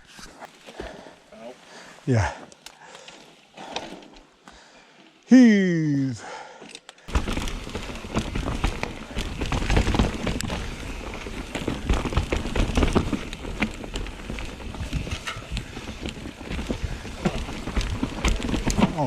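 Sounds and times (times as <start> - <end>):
footsteps in forest debris: 0.0 - 5.2, 7.0 - 19.0
bike knocking: 7.1 - 19.0.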